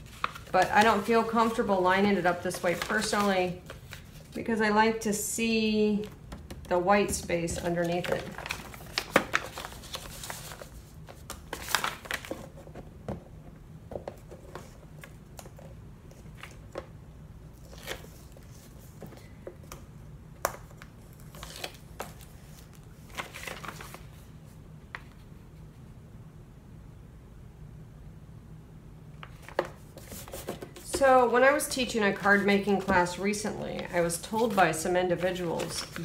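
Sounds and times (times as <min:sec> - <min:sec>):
paper rustling and crinkling: 0:00.0 - 0:04.5, 0:07.1 - 0:12.8, 0:17.5 - 0:19.4, 0:21.0 - 0:24.3, 0:29.2 - 0:36.0.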